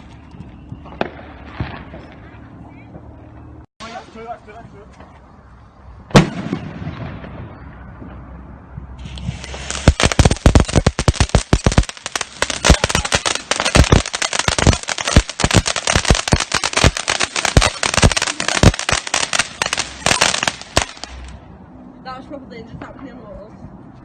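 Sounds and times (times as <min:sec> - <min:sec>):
fireworks cracks and bangs: 0:00.8 - 0:02.5, 0:06.1 - 0:08.3, 0:09.0 - 0:21.4
fireworks hiss: 0:09.0 - 0:21.3.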